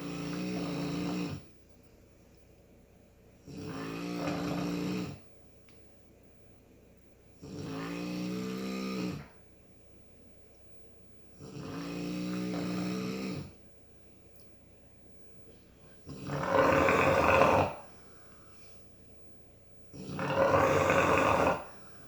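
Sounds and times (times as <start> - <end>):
person snoring: 7.4 - 9.3, 11.4 - 13.6, 16.1 - 18.4, 20.0 - 22.0.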